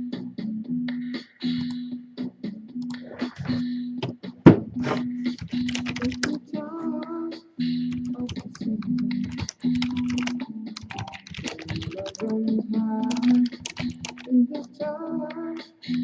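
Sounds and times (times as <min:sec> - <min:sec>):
background music held notes: 0:00.0 - 0:16.0
computer keyboard typing: 0:05.3 - 0:06.4, 0:07.9 - 0:12.4, 0:13.0 - 0:14.3.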